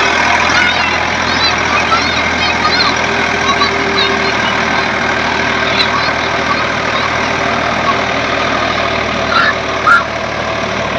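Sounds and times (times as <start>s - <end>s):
tractor engine running: 0.0s - 10.9s.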